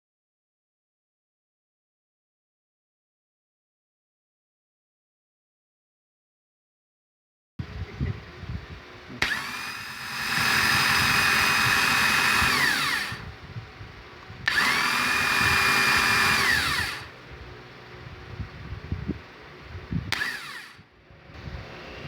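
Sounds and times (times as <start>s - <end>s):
starter motor whining: 9.1s - 13.3s, 14.4s - 17.2s, 20.0s - 20.8s.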